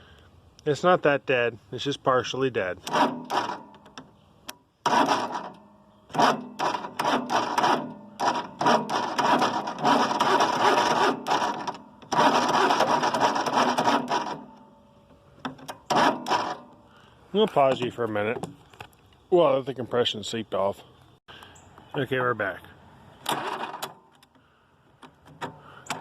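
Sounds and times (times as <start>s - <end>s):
electric starter cranking engine: 2.8s - 3.8s, 4.8s - 14.6s, 15.7s - 16.7s.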